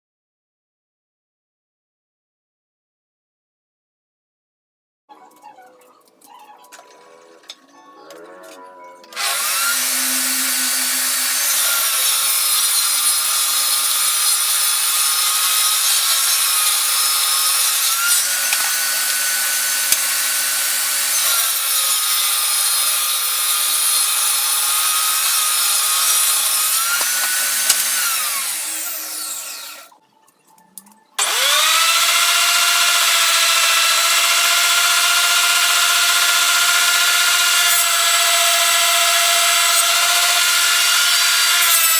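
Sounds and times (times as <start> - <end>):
electric power tool cutting wood: 9.1 - 29.9, 31.2 - 41.9.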